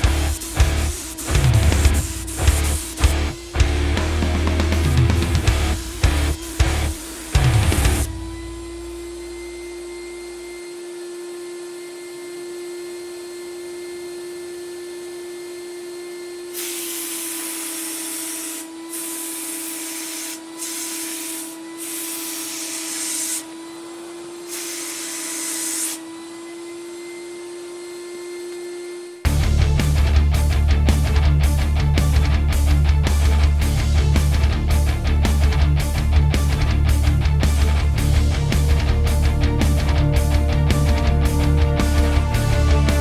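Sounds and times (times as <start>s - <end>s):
spray gun hissing: 0.0s - 3.6s
sprayer turbine whine: 0.0s - 17.5s, 23.0s - 43.0s.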